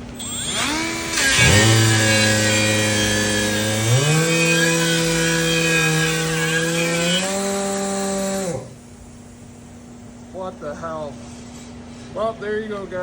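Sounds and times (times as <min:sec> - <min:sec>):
angle grinder motor whining: 0:00.0 - 0:08.9.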